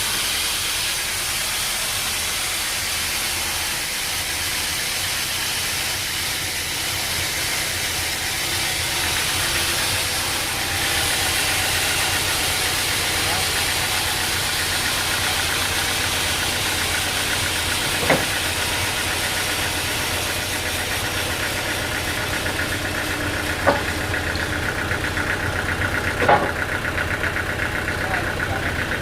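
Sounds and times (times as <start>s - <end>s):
sawmill machinery running: 0.0s - 29.0s
sharp knocks: 17.8s - 18.4s, 23.6s - 24.0s, 26.2s - 26.6s.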